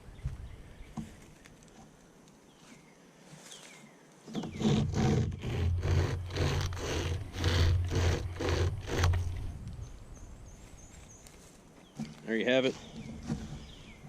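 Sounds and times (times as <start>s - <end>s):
pocket chainsaw rasping through wood: 4.3s - 9.5s, 12.8s - 14.0s.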